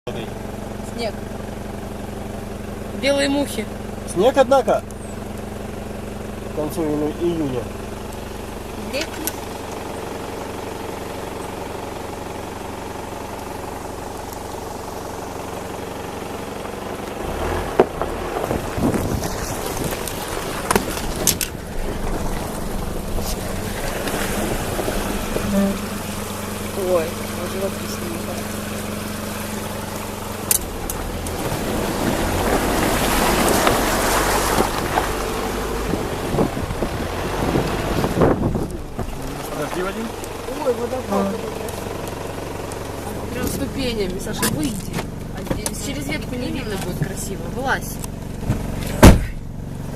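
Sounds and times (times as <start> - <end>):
vehicle engine running: 0.0 - 49.9
low rumble: 16.9 - 48.4
wind noise: 18.3 - 25.6, 35.8 - 39.2.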